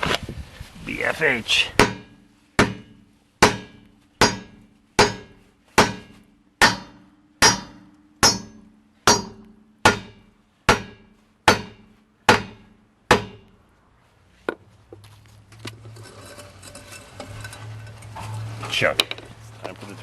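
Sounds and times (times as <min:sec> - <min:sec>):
hammer pounding on metal: 0:01.7 - 0:13.5.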